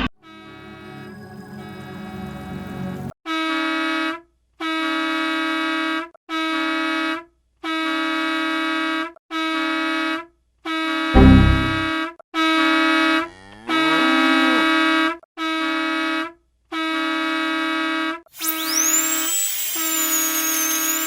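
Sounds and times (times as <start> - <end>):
bus air horn blasts: 3.3 - 18.2
loud low boom: 11.2 - 11.9.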